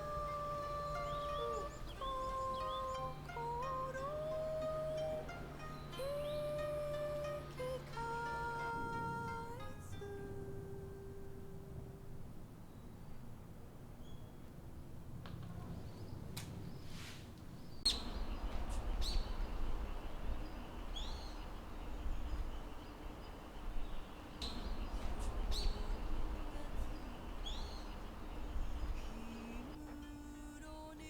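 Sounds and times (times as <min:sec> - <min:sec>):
bird chirping: 0:00.0 - 0:10.0, 0:12.6 - 0:14.5, 0:15.5 - 0:30.9
outdoor background hiss: 0:00.0 - 0:31.0.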